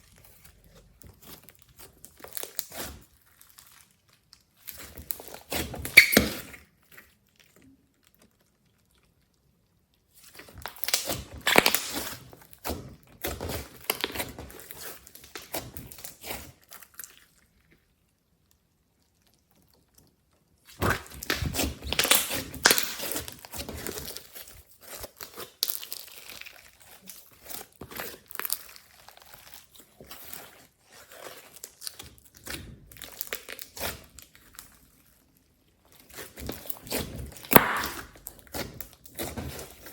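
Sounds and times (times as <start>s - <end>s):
slime squishing and popping: 0.0s - 7.1s, 10.2s - 17.3s, 19.0s - 35.1s, 35.8s - 39.9s.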